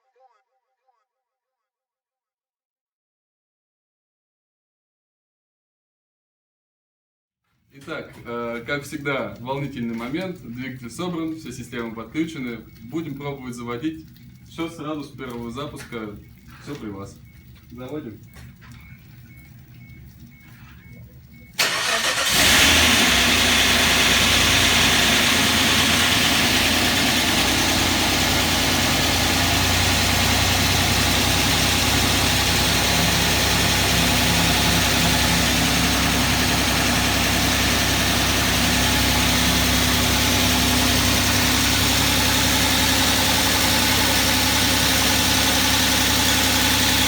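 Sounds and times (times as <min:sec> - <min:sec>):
car engine starting and idling: 0:21.6 - 0:47.0
rasping lifter clatter: 0:21.6 - 0:47.0.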